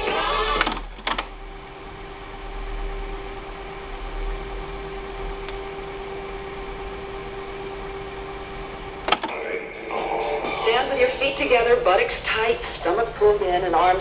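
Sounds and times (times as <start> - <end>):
low mains hum: 0.0 - 14.0
tape hiss: 0.0 - 14.0
cassette deck click: 0.6 - 1.3, 9.0 - 9.4.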